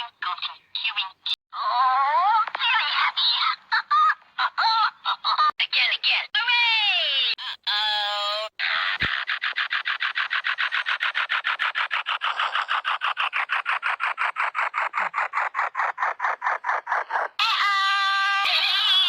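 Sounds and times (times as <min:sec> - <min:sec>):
high held toy voice: 0:05.6 - 0:09.1, 0:17.4 - 0:19.0
toy electronic pulsing noise: 0:07.4 - 0:19.0.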